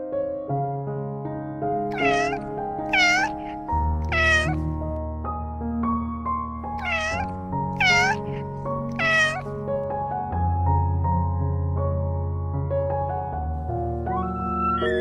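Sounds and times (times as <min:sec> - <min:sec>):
animal high calls: 0:01.9 - 0:03.5, 0:04.1 - 0:04.6, 0:06.8 - 0:09.4.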